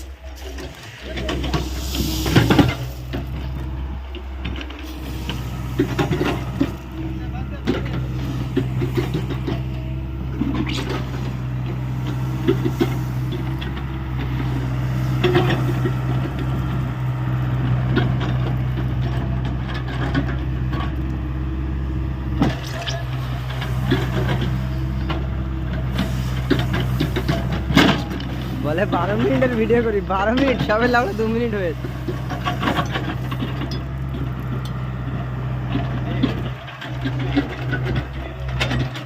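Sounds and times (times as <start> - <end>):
excavator diesel engine running: 0.0 - 39.0
machine knocks and clatters: 22.4 - 34.8.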